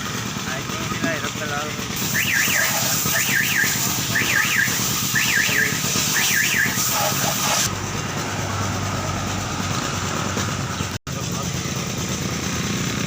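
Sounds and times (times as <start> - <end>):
warbling electronic alarm tone: 2.0 - 7.7.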